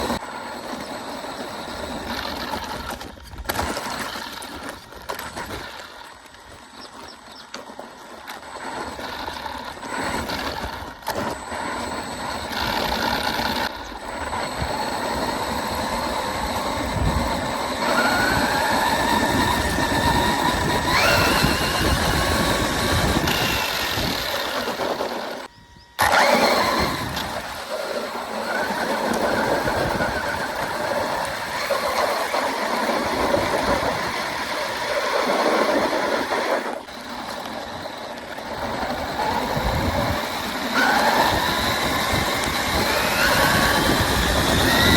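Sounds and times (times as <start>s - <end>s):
electric rc car motor whining: 0.0s - 44.9s.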